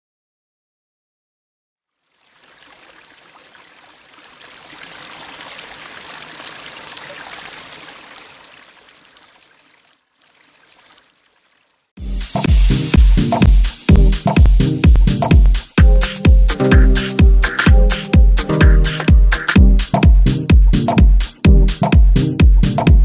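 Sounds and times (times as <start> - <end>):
rushing hiss-like noise: 12.0 - 14.4
loud dance music: 12.0 - 23.0.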